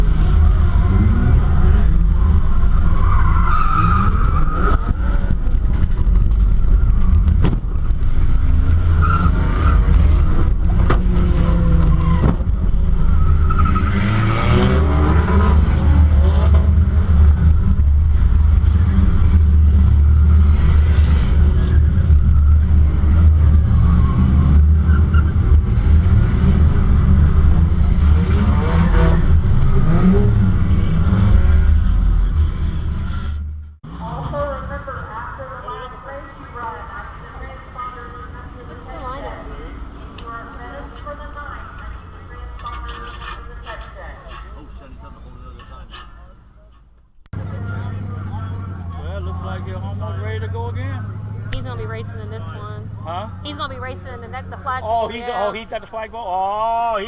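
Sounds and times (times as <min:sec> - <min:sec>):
race car engines revving: 0:00.0 - 0:57.0
tyre squeal: 0:08.8 - 0:10.4, 0:11.6 - 0:14.8, 0:42.9 - 0:46.4.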